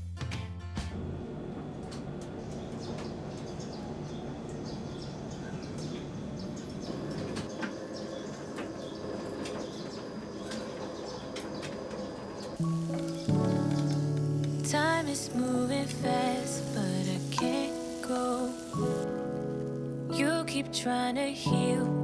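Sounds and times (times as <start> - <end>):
rustling fluttering noise: 6.9 - 20.2.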